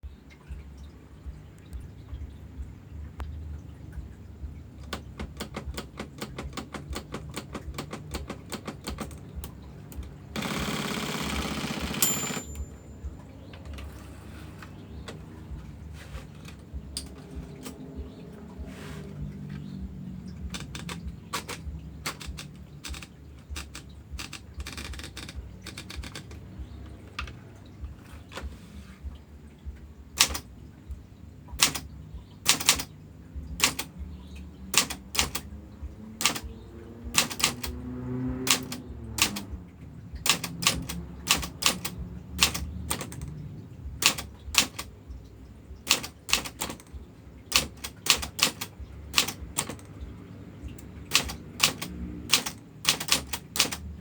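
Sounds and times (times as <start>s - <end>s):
typewriter carriage sliding: 4.8s - 12.8s, 13.6s - 17.9s, 20.4s - 26.5s, 30.2s - 30.5s, 31.6s - 31.9s, 32.5s - 32.9s, 33.6s - 33.9s, 34.7s - 35.5s, 36.2s - 36.5s, 37.2s - 39.5s, 40.3s - 43.4s, 44.0s - 44.9s, 45.9s - 50.0s, 50.8s - 53.9s
typewriter keystrikes: 4.8s - 15.4s, 16.0s - 18.0s, 19.5s - 27.4s, 30.2s - 30.5s, 31.5s - 33.0s, 33.6s - 34.0s, 34.6s - 39.6s, 40.2s - 43.4s, 44.0s - 45.0s, 45.8s - 54.0s.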